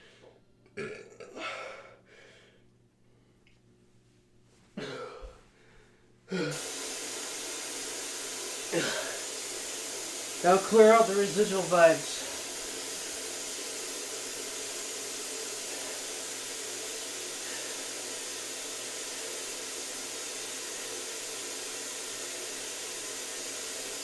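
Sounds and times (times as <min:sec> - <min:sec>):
steady hiss: 0:06.5 - 0:24.0.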